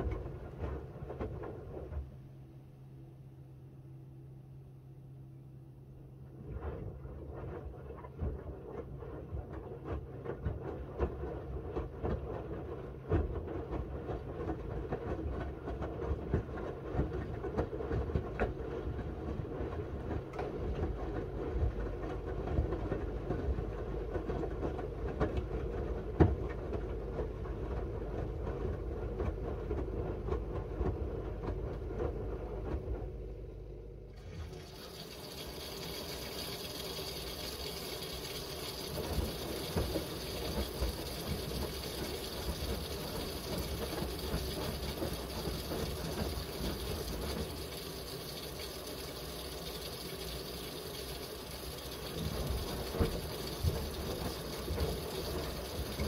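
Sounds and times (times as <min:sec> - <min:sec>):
washing machine drum turning: 0:34.2 - 0:56.0.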